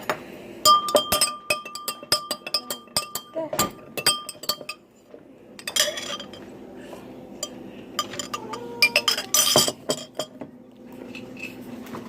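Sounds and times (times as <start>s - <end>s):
drinking glass clinking: 0.0s - 4.9s, 7.4s - 10.4s
glass ringing tone: 0.6s - 4.8s, 7.4s - 10.4s.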